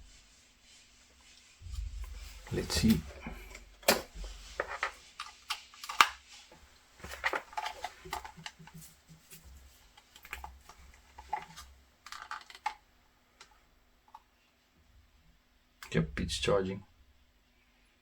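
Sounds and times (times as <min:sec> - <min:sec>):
plastic gadgets clicking and tapping: 0:02.4 - 0:06.3, 0:07.0 - 0:08.9, 0:10.0 - 0:12.8.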